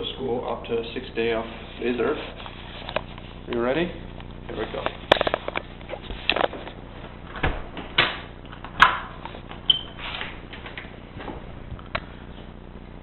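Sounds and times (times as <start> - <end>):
door squeak: 9.7 - 10.4.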